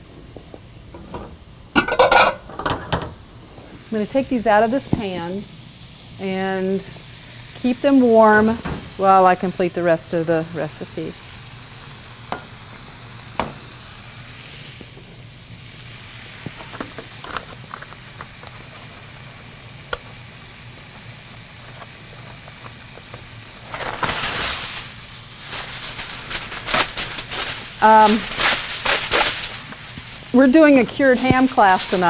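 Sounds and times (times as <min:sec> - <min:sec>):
meat sizzling in oil: 0:01.6 - 0:32.0
utensil clinking against pan: 0:01.8 - 0:03.0.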